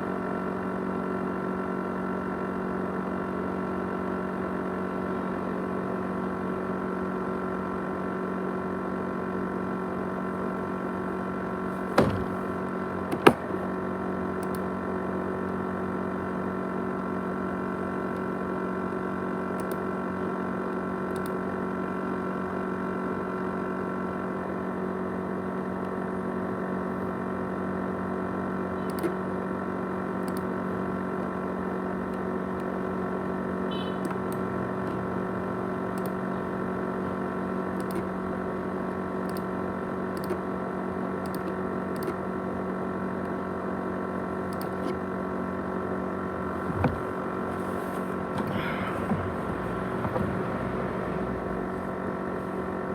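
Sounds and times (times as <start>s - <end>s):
hard drive humming: 9.9s - 20.0s, 28.7s - 52.9s.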